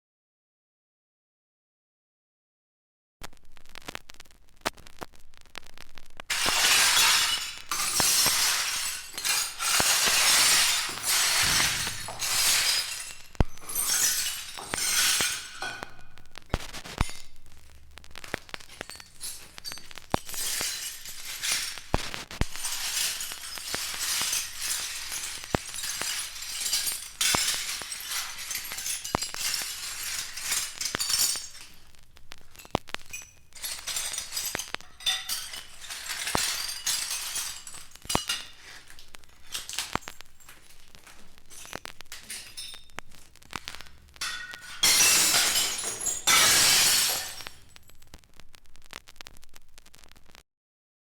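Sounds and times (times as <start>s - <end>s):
glass clinking and tinkling: 6.3s - 16.1s, 22.6s - 31.8s, 32.6s - 43.0s.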